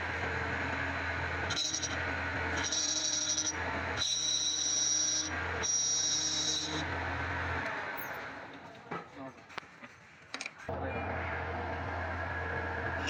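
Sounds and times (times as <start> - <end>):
high-pitched clutch whine: 1.5 - 6.9.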